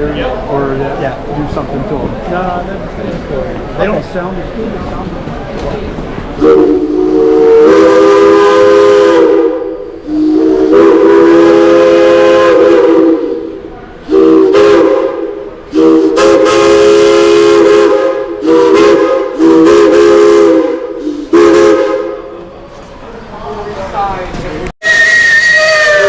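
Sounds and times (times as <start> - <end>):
steam hiss: 6.4 - 21.6
chime steam whistle blasts: 24.8 - 26.0.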